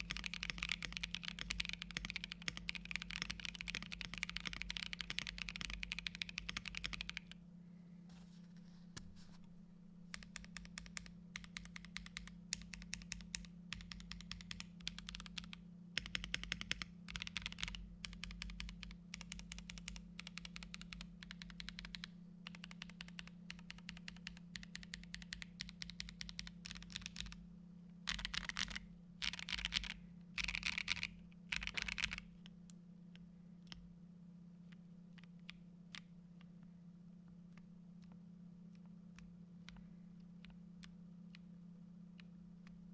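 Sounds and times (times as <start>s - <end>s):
mechanical keyboard typing: 0.0s - 7.4s, 10.1s - 27.4s, 28.1s - 32.2s.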